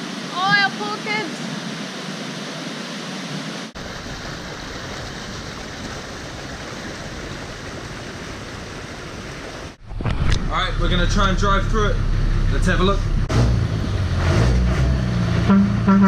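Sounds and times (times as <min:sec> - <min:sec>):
rushing water: 0:00.0 - 0:11.7.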